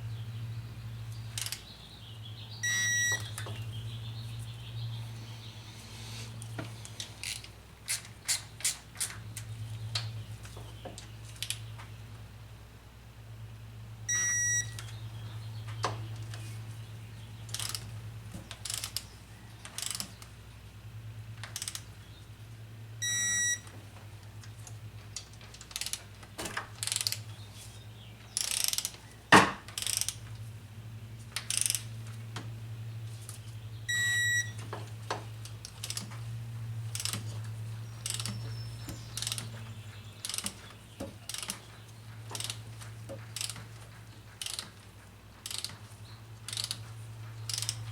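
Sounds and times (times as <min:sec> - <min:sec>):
steady low hum: 0:00.0 - 0:47.9
ratchet wrench clicking: 0:01.4 - 0:01.6, 0:06.9 - 0:09.5, 0:17.5 - 0:17.8, 0:18.5 - 0:20.2, 0:21.4 - 0:21.9, 0:26.8 - 0:27.2, 0:28.4 - 0:29.0, 0:29.8 - 0:30.3, 0:31.4 - 0:31.9, 0:35.6 - 0:36.1, 0:36.9 - 0:37.3, 0:38.0 - 0:38.4, 0:39.1 - 0:39.5, 0:40.2 - 0:40.6, 0:41.3 - 0:41.6, 0:42.4 - 0:42.6, 0:43.4 - 0:43.6, 0:44.4 - 0:44.8, 0:45.4 - 0:45.8, 0:46.4 - 0:46.8, 0:47.4 - 0:47.9
high electronic beep: 0:02.6 - 0:03.3, 0:14.1 - 0:14.8, 0:23.0 - 0:23.6, 0:33.9 - 0:34.6.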